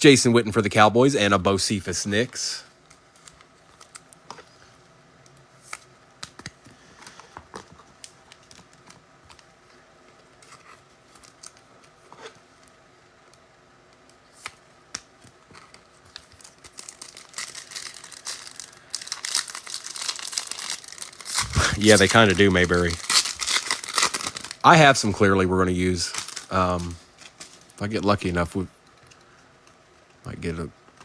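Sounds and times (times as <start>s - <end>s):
foil wrapper crinkling: 15.6s - 28.2s.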